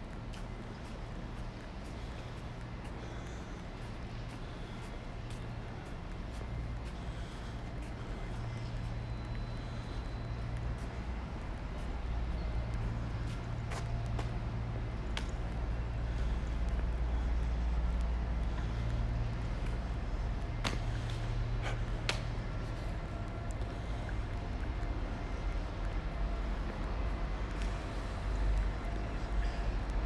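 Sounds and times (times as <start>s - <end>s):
low vehicle engine rumble: 0.0s - 30.0s.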